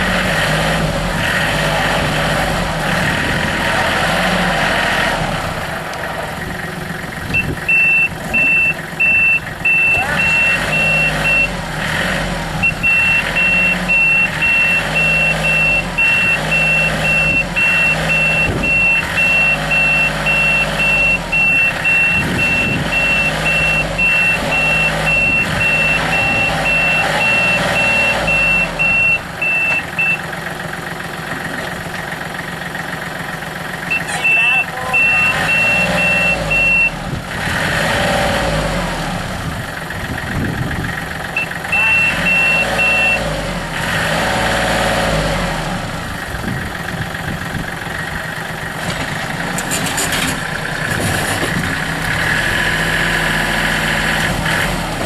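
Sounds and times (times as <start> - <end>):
diesel engine running: 0.0 - 55.0
backup alarm beeping: 7.4 - 11.6, 12.6 - 30.2, 33.9 - 37.0, 41.4 - 43.3.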